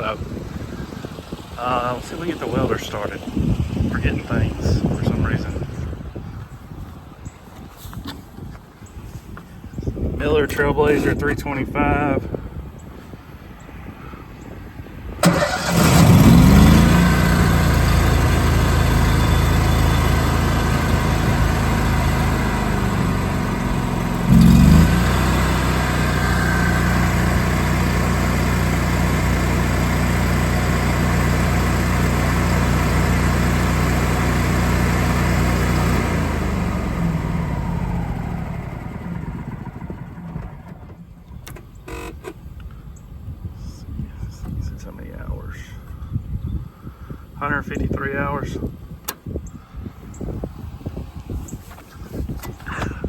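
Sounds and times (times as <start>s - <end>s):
generator engine cranking and running: 0.0s - 5.5s, 15.2s - 42.4s.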